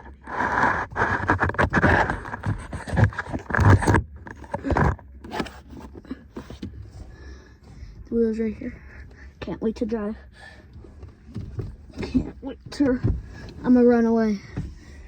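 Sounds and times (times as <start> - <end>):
loud rustling and scraping: 0.0 - 9.2
light clicks and knocks: 10.7 - 15.0.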